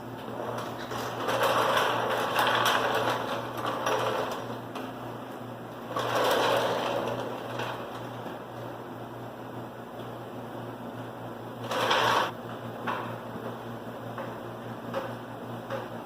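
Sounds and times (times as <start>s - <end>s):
rapid mechanical rattle: 0.2s - 4.8s, 5.8s - 8.4s, 11.6s - 12.3s.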